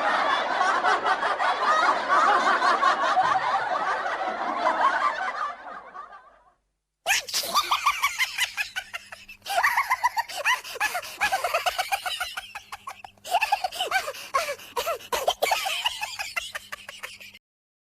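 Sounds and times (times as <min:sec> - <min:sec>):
cartoon cackling laughter: 0:07.1 - 0:17.4.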